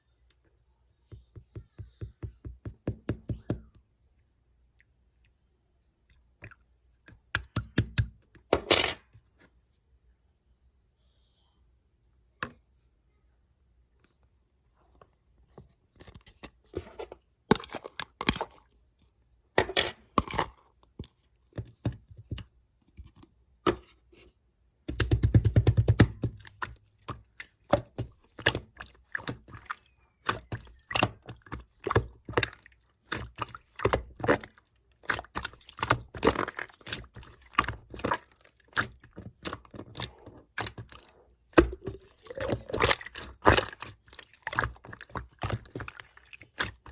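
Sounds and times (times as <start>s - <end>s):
slime squelching and popping: 6.4s - 8.2s, 24.9s - 46.9s.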